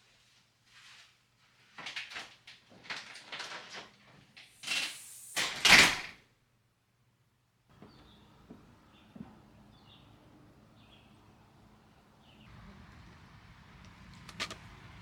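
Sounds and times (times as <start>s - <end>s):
slide and bump: 13.8s - 15.0s
knocks and scrapes from handling: 14.1s - 14.8s.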